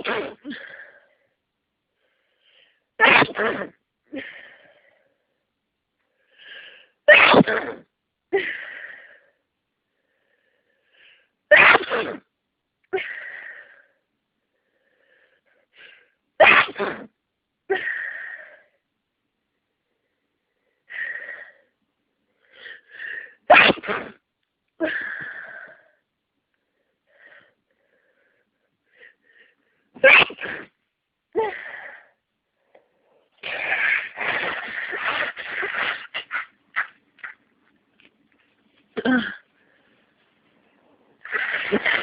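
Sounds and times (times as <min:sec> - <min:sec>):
person sneezing hard: 0:00.0 - 0:00.6, 0:03.0 - 0:03.8, 0:07.1 - 0:07.9, 0:11.5 - 0:12.3, 0:16.4 - 0:17.1, 0:23.5 - 0:24.2, 0:30.0 - 0:30.8, 0:33.4 - 0:37.4, 0:41.2 - 0:42.0
soft breaths: 0:00.4 - 0:03.0, 0:04.1 - 0:07.0, 0:08.4 - 0:11.5, 0:13.0 - 0:16.2, 0:24.8 - 0:30.0, 0:31.4 - 0:33.9, 0:37.6 - 0:41.8.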